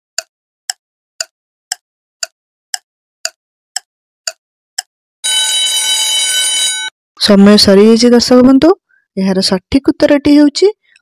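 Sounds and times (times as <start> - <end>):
clock-like ticks: 0.2 - 4.9
electronic alarm ring: 5.2 - 7.0.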